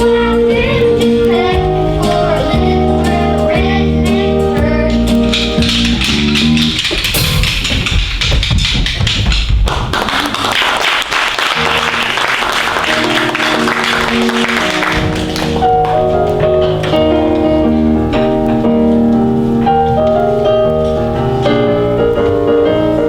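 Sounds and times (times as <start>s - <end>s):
stage show music: 0.0s - 23.0s
rapid tapping or clapping: 5.2s - 16.0s.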